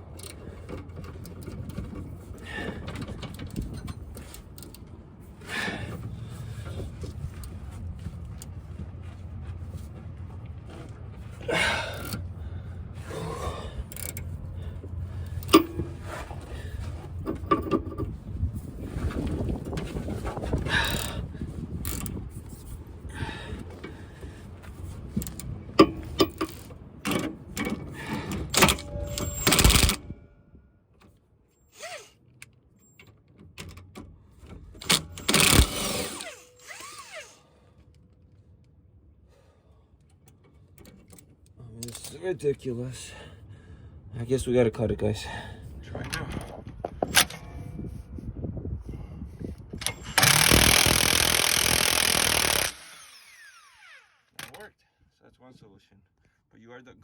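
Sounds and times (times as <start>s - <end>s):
hand tools clicking on metal: 15.4s - 15.9s, 34.8s - 37.0s, 49.8s - 53.3s
metallic clatter with ringing: 28.6s - 30.3s.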